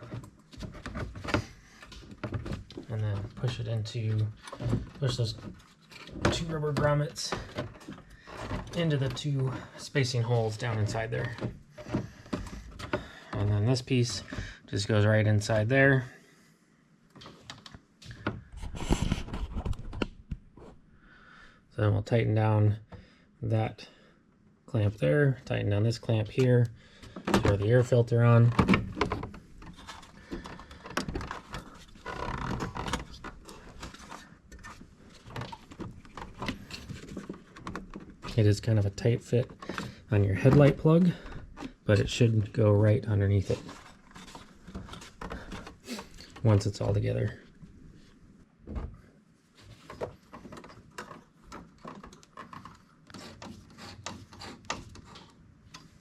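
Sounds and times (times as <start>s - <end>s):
car parts clicking and scraping: 0.0s - 14.5s, 26.3s - 48.1s, 49.6s - 56.0s.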